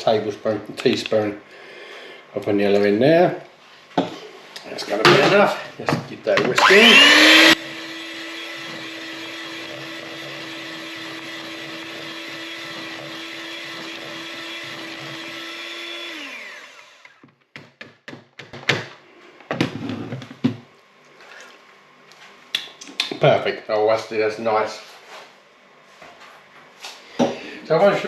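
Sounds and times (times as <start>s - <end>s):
electric whisk running: 6.6s - 17.3s.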